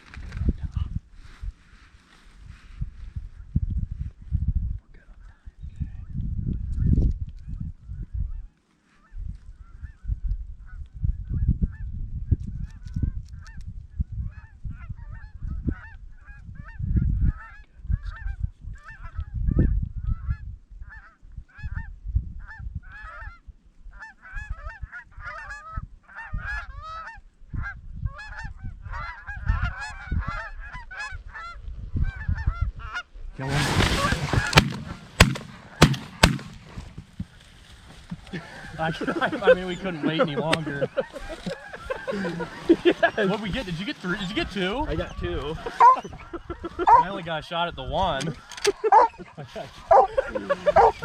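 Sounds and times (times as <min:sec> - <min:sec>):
wind rumbling on microphone: 0:00.0 - 0:08.5, 0:09.1 - 0:51.0
geese honking: 0:32.4 - 0:47.2, 0:48.2 - 0:51.0.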